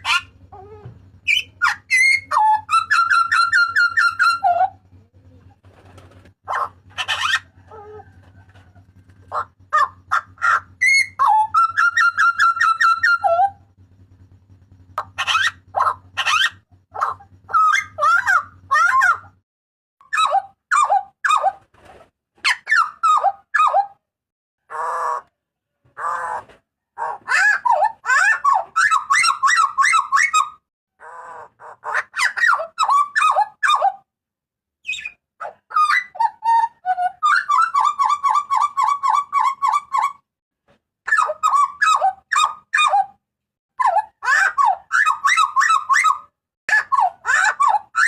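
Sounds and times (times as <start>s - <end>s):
fast run of repeated bird notes: 0.0s - 19.4s, 27.2s - 30.6s
harsh rasping bird calls: 0.0s - 19.4s, 20.0s - 24.0s, 24.6s - 34.1s, 34.8s - 40.2s, 41.1s - 43.2s, 43.8s - 48.0s
bird calling sharp ringing notes: 9.6s - 19.3s.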